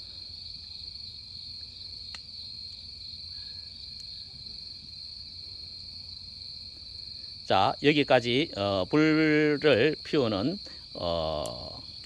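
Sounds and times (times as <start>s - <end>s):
wood fire popping: 0.0s - 5.7s, 8.2s - 12.0s
crickets chirping: 0.0s - 12.0s.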